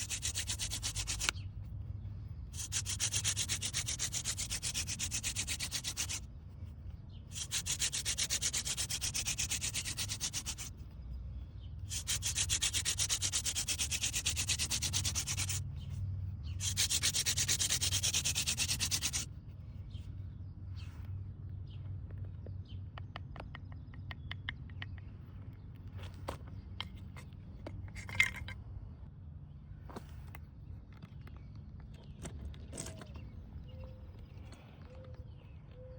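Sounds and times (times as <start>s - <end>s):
wooden spindle rasping rub: 0.0s - 1.4s, 2.5s - 6.3s, 7.3s - 10.8s, 11.9s - 15.7s, 16.6s - 19.3s.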